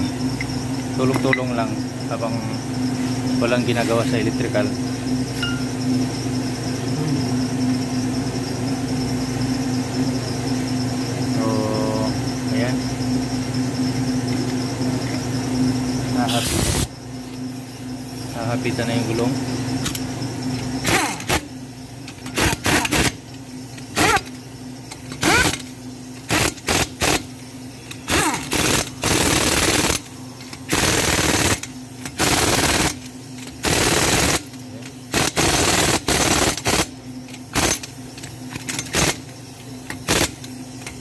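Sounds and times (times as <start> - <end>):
impact wrench hammering: 20.8 - 21.5, 23.9 - 24.3, 24.9 - 25.7, 28.0 - 30.1.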